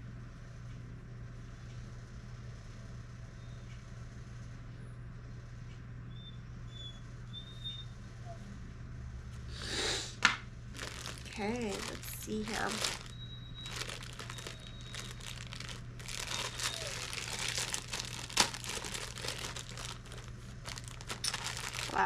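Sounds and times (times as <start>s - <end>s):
low room hum: 0.0s - 22.0s
packaging rustling: 10.7s - 22.0s.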